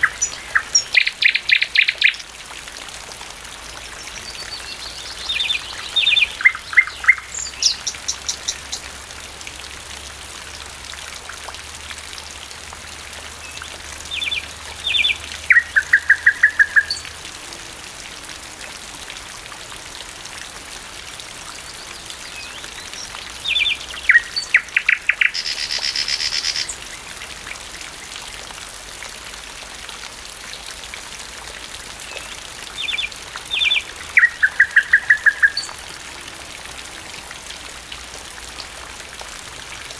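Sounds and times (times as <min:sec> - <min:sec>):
nightingale singing: 0:00.0 - 0:02.3, 0:04.2 - 0:08.9, 0:14.1 - 0:17.0, 0:22.3 - 0:27.0, 0:32.8 - 0:35.8
rain pattering: 0:00.0 - 0:39.9.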